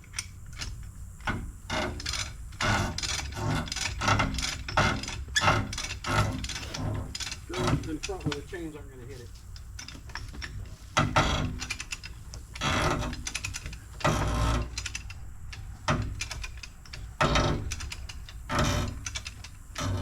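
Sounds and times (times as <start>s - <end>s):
winch ratchet clicking: 0.0s - 20.0s.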